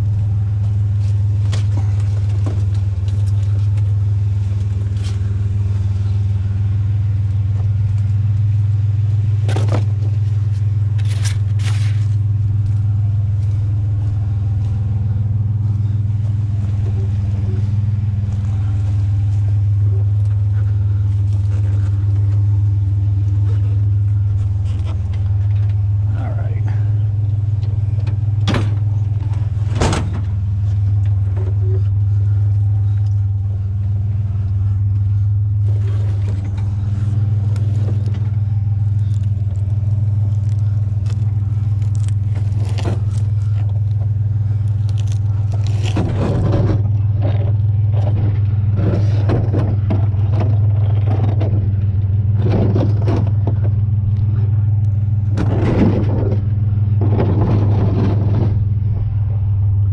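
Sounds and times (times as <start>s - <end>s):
truck engine droning: 0.0s - 59.9s
knocks scrapes and rattles: 34.3s - 59.1s.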